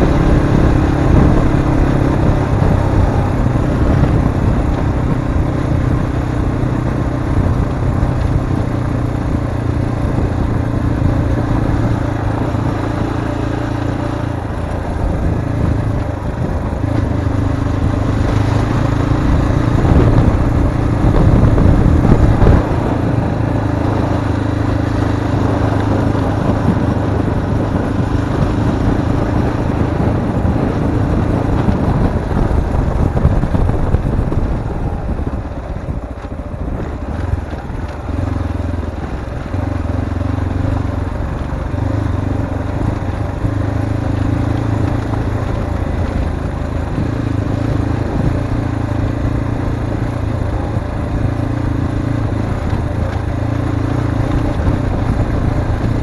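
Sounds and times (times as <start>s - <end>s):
motorcycle engine under throttle: 0.0s - 56.0s
wind and ground noise: 0.0s - 56.0s.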